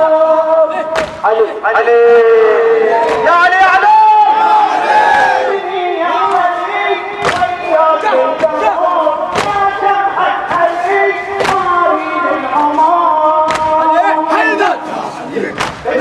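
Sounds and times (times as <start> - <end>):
men chanting in unison: 0.0 - 16.0
chest-beating slaps: 0.9 - 1.3, 3.0 - 3.3, 7.2 - 7.6, 9.3 - 9.8, 11.4 - 11.8, 12.6 - 13.9, 15.5 - 16.0.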